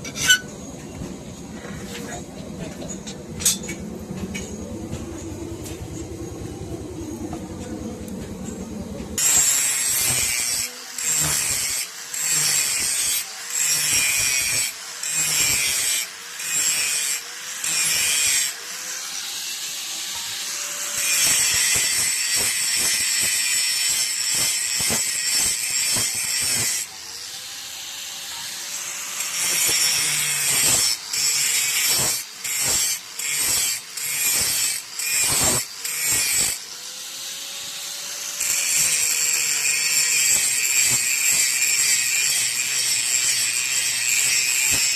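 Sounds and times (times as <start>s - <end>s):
knife blade grinding: 0.0s - 0.6s.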